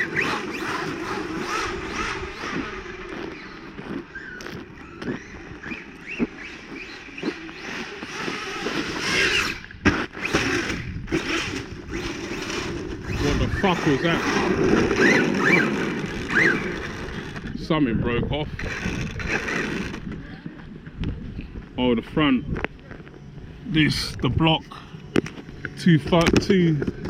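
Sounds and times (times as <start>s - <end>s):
electric motor whining: 0.0s - 17.7s, 18.4s - 20.2s
tyres on gravel: 0.0s - 17.8s, 18.4s - 27.0s
toy car hitting ground: 8.0s - 13.0s.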